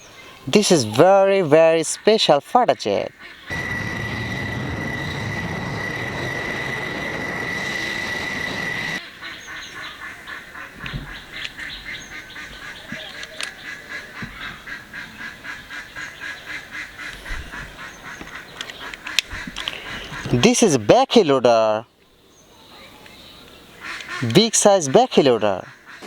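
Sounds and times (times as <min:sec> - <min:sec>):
jet engine rush and whine: 0:03.5 - 0:09.0.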